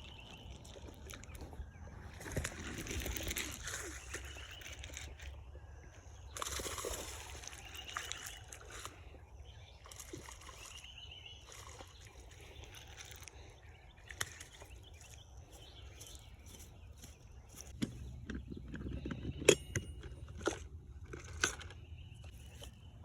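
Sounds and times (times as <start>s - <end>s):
bird chirps: 3.3s - 20.3s
water sloshing: 6.0s - 22.8s.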